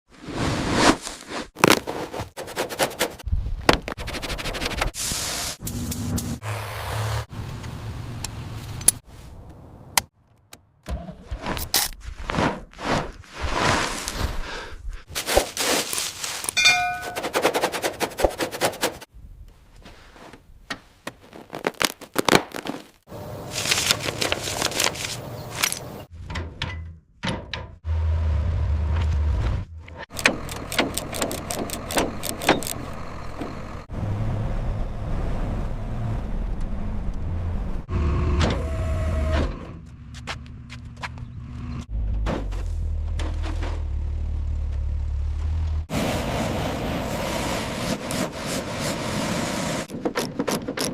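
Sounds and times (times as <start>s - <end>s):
knocks and scrapes: 0.2s - 5.0s, 15.0s - 27.8s, 40.1s - 44.8s
metal clinks: 16.6s - 17.3s
brief ring: 16.6s - 17.4s.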